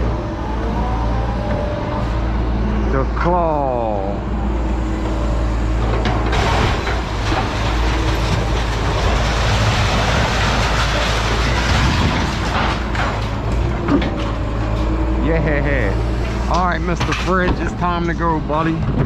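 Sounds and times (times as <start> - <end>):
diesel engine rumbling: 0.0 - 19.0
metal knocks and clatters: 5.8 - 15.0, 16.2 - 19.0.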